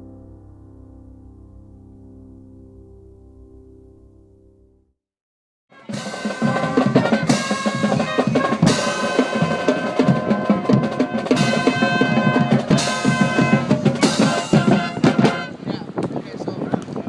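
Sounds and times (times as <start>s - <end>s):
drum kit with cymbal crashes: 5.8s - 15.5s.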